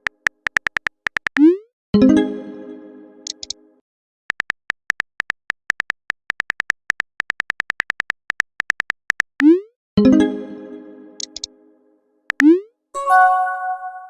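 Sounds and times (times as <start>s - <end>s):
phone keyboard typing clicks: 0.0s - 1.5s, 3.3s - 3.6s, 4.3s - 9.5s, 11.2s - 11.5s, 12.3s - 12.5s
ringing notification chime: 13.0s - 14.0s.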